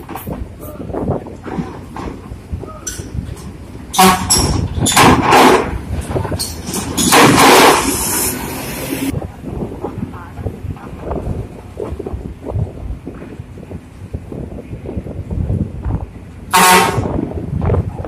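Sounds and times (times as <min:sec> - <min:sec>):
heavy vehicle noise: 0:00.0 - 0:18.0.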